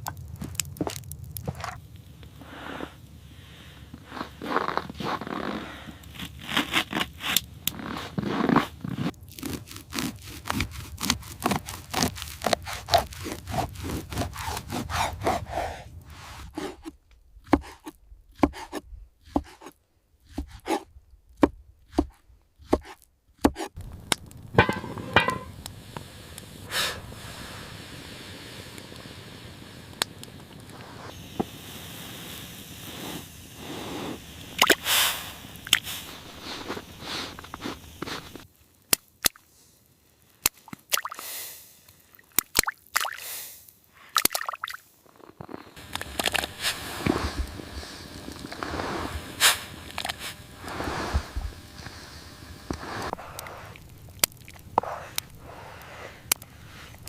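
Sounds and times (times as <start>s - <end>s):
scraping: 24.3s - 25.6s.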